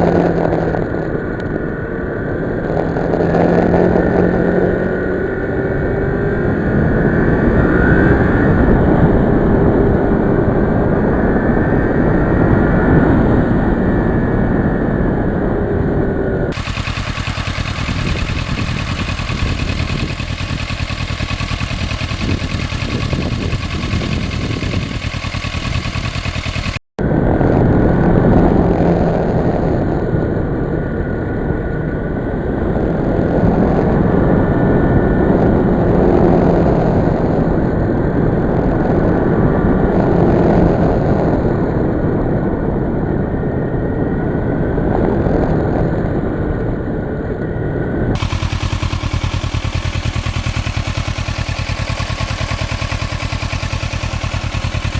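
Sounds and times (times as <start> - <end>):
motorcycle engine running: 0.0 - 13.5, 16.5 - 42.0, 48.2 - 54.9
steady rushing noise: 0.0 - 54.9.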